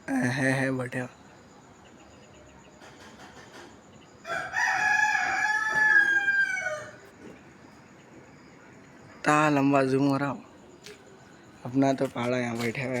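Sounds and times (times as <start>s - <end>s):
rooster crowing: 4.2s - 7.2s.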